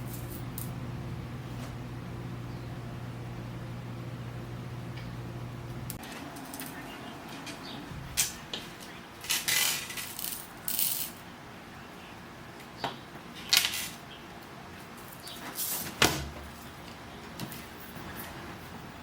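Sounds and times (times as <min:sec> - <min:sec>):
low hum: 0:00.0 - 0:08.2
beads clicking and rattling: 0:09.2 - 0:11.2.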